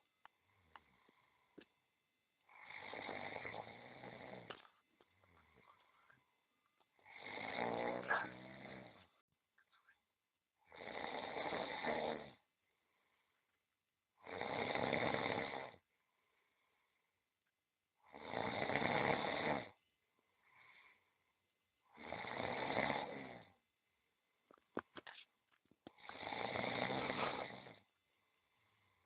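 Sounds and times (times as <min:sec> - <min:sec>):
cat snoring: 0:02.5 - 0:04.6, 0:07.0 - 0:09.1, 0:10.6 - 0:12.4, 0:14.2 - 0:15.8, 0:18.0 - 0:19.8, 0:21.9 - 0:23.6, 0:26.0 - 0:27.9.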